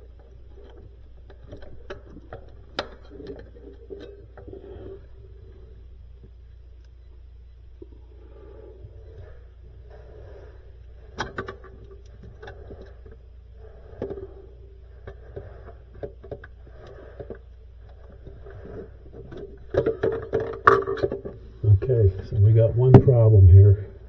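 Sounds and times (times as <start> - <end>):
low hum: 20.9 - 24.0.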